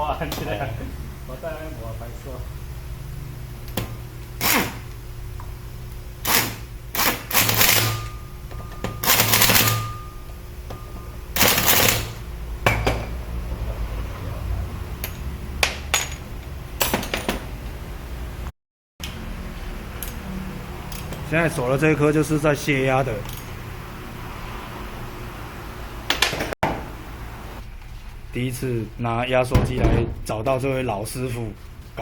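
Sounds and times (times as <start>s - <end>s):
steady low hum: 0.0s - 15.6s.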